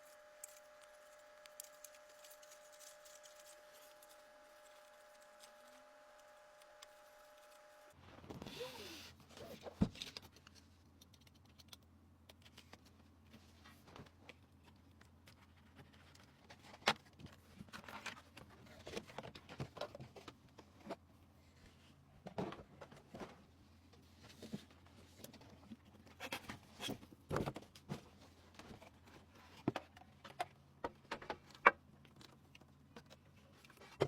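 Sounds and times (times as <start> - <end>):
low steady hum: 0.0 - 26.0
small hard parts clicking and tapping: 10.0 - 12.8.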